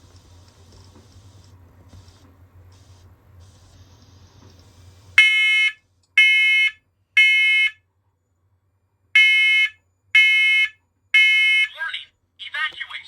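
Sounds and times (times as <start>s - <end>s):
smoke alarm beeping: 5.2s - 7.8s, 9.2s - 11.7s.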